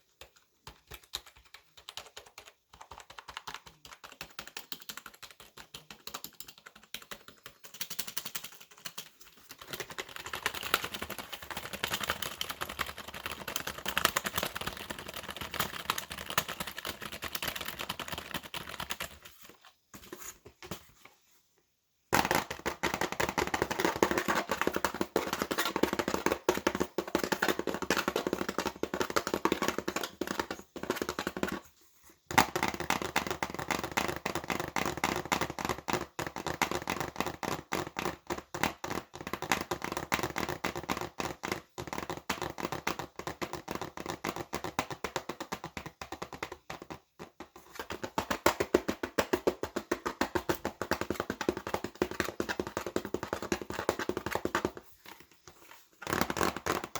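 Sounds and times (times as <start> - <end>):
fast keyboard typing: 0.2 - 19.6, 22.2 - 31.6, 47.9 - 54.8.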